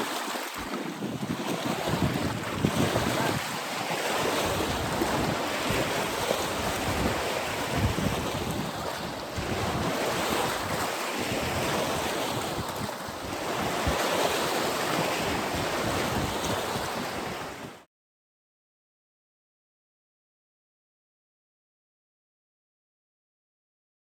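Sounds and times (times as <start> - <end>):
choppy lake water: 0.0 - 17.9
wind buffeting microphone: 0.6 - 17.8.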